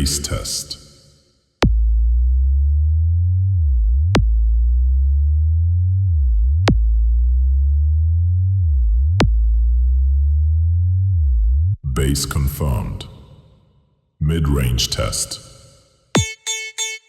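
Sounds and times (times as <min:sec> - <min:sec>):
deep synthesized bass tones: 0:01.6 - 0:13.3.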